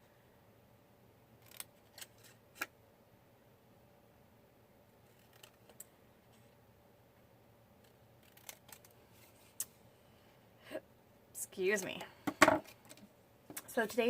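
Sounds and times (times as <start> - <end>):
scissors snipping paper: 8.2 - 8.9.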